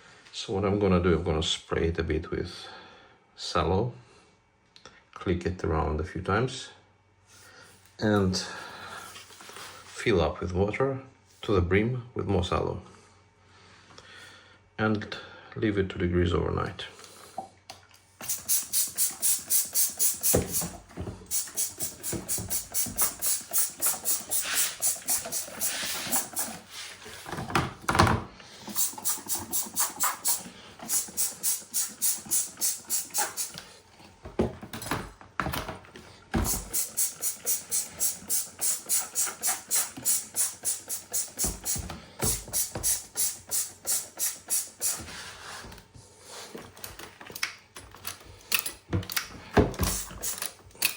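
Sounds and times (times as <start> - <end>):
trigger sprayer squirting: 18.2 - 26.8, 28.6 - 33.7, 36.4 - 45.1, 49.7 - 50.9.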